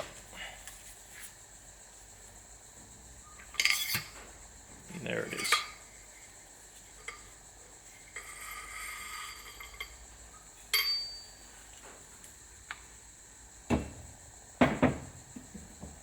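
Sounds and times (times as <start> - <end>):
faint metal rattle: 3.4 - 12.2
metallic clink with ring: 3.5 - 4.2, 5.3 - 6.1, 8.1 - 11.6
heavy knocks of parts put down: 13.7 - 16.0.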